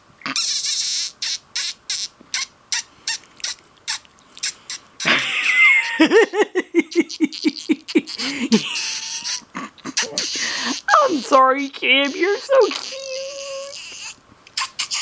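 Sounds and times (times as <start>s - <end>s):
kissing noises: 0.2s - 6.0s, 7.1s - 11.3s, 12.0s - 15.0s
person laughing: 5.0s - 11.1s.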